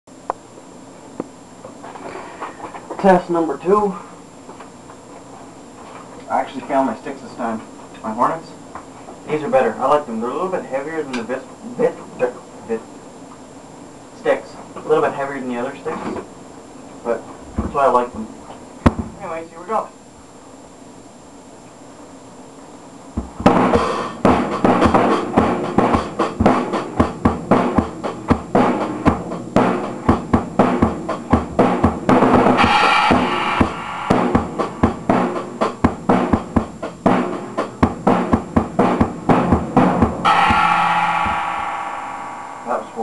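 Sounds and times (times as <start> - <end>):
kick snare and tom hits: 23.2 - 42.9
cymbal wash: 32.1 - 35.8, 40.2 - 43.0
crash cymbal ringing: 32.4 - 35.1, 40.2 - 43.0.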